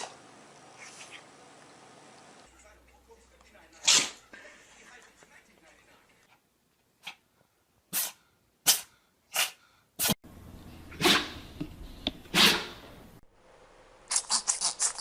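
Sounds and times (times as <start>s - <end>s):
pet sneezing: 3.8s - 4.2s, 7.9s - 10.2s, 10.9s - 11.4s, 12.3s - 12.8s.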